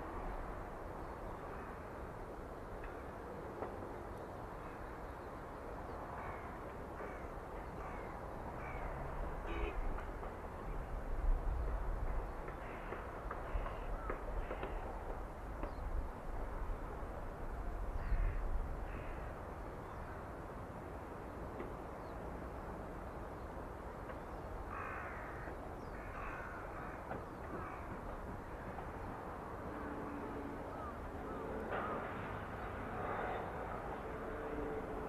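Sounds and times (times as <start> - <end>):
crows cawing: 6.2 - 9.0, 12.6 - 15.0, 18.0 - 19.4, 24.7 - 28.1, 30.7 - 32.1.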